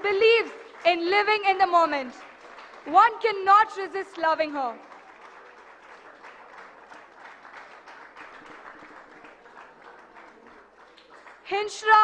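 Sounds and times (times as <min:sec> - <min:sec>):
audience applauding: 0:00.0 - 0:11.5.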